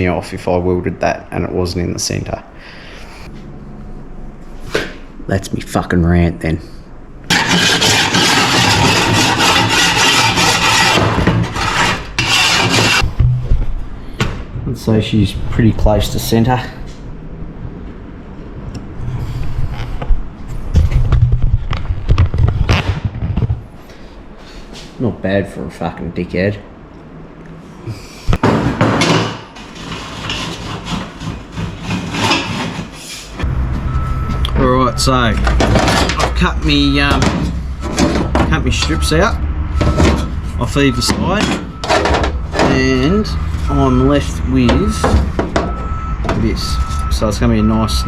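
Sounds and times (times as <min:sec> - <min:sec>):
angle grinder cutting metal: 0:07.3 - 0:13.0
scraping on workbench: 0:07.3 - 0:13.0, 0:28.4 - 0:33.0.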